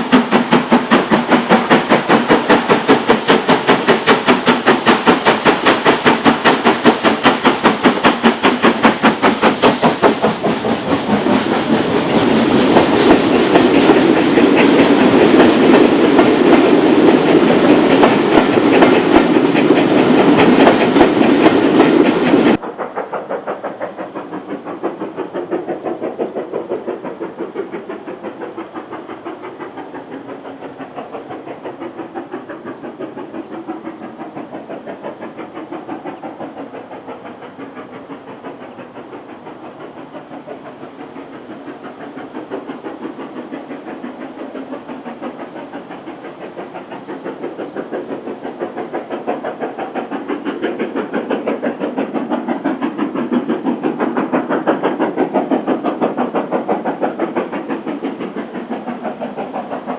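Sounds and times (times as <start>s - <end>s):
steam hissing: 0.0s - 59.9s
steam locomotive exhaust beating: 0.0s - 59.9s.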